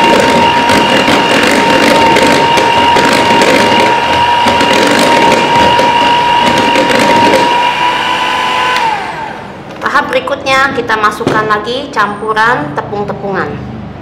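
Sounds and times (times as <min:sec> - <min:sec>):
electric hand mixer whine: 0:00.0 - 0:09.6.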